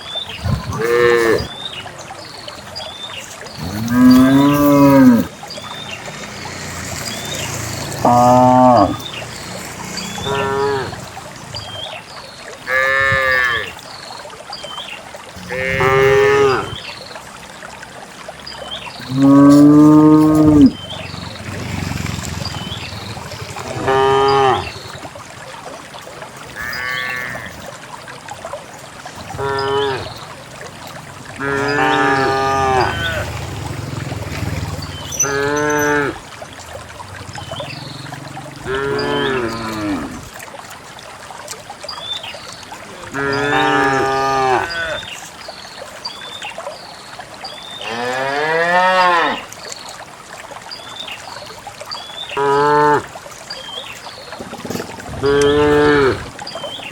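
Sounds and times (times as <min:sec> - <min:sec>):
cattle mooing: 0:00.4 - 0:01.5, 0:03.6 - 0:05.3, 0:08.0 - 0:09.0, 0:10.0 - 0:11.0, 0:15.4 - 0:16.8, 0:19.1 - 0:20.8, 0:23.6 - 0:24.7, 0:26.6 - 0:27.6, 0:31.4 - 0:33.4, 0:37.8 - 0:40.2, 0:43.1 - 0:45.0, 0:55.2 - 0:56.3.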